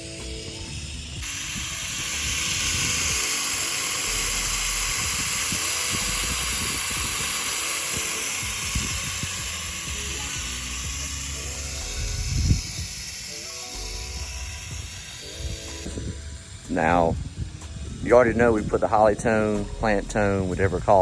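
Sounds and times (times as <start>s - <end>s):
water spraying hiss: 0.0s - 20.6s
hose sprayer switch: 1.2s - 16.2s.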